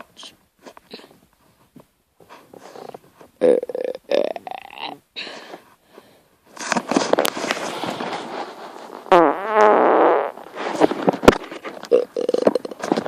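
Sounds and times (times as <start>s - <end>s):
fart noises: 2.7s - 5.0s, 9.1s - 13.0s.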